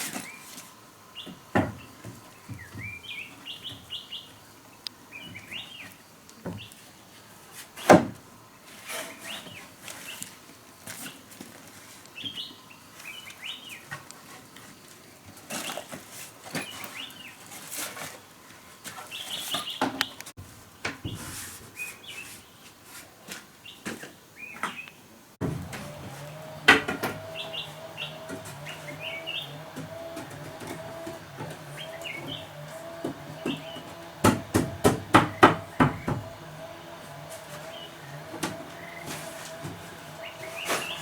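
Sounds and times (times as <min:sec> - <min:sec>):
small birds chirping: 0:00.2 - 0:07.2, 0:25.6 - 0:41.0
tool striking wood: 0:25.4 - 0:41.0.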